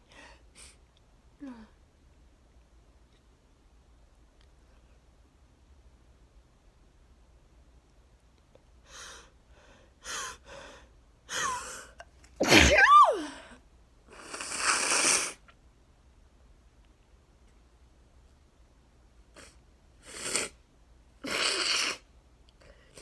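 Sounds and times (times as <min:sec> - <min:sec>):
woman sneezing: 0:12.4 - 0:13.4.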